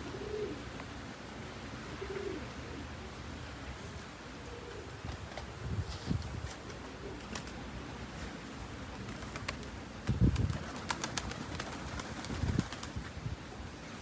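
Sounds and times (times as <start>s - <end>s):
wind buffeting microphone: 10.0s - 13.5s.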